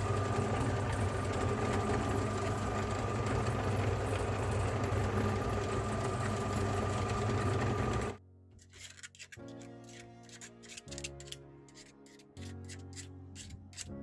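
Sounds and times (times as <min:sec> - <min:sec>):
meat grinder motor whirring: 0:00.0 - 0:08.2.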